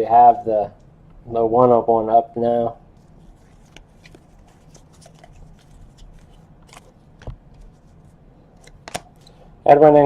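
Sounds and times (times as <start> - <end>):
cards rustling and clicking: 3.0 - 9.4.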